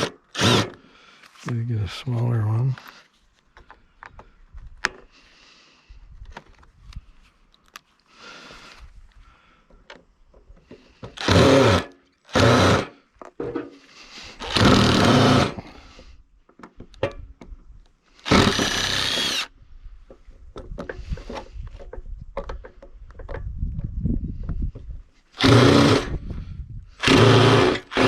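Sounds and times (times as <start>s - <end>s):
power tool cutting concrete: 0.0s - 0.7s, 11.2s - 12.9s, 14.4s - 15.7s, 18.3s - 19.5s, 25.4s - 26.2s, 27.0s - 28.0s.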